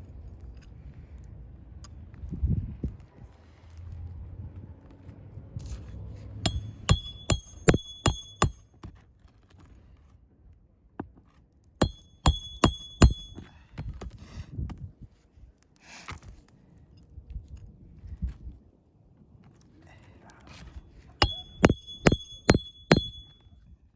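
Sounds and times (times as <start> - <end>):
hammer striking roofing nails: 6.5 - 8.6, 11.8 - 14.0, 21.2 - 23.3.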